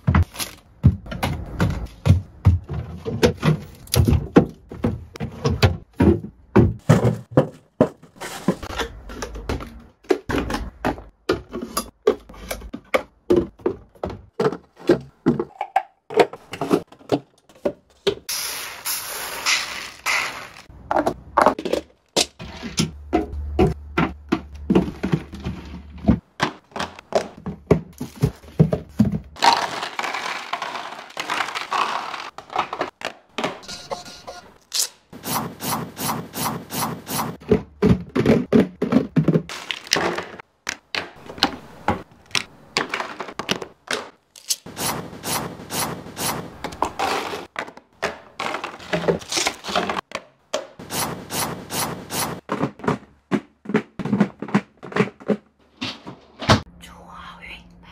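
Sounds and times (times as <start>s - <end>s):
food packages clicking and knocking: 0.0s - 18.3s, 20.2s - 33.7s, 37.4s - 44.7s, 46.6s - 50.8s, 52.4s - 56.2s.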